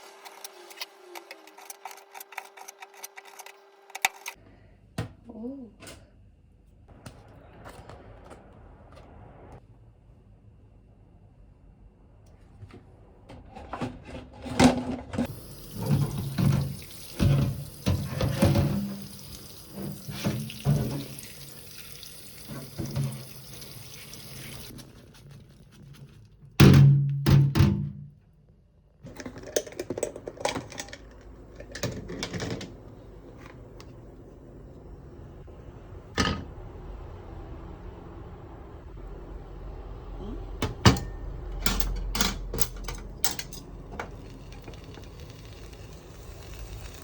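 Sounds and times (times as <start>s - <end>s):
dishes and utensils clattering: 14.5s - 21.5s, 40.7s - 43.7s
tap running into sink: 15.3s - 24.7s.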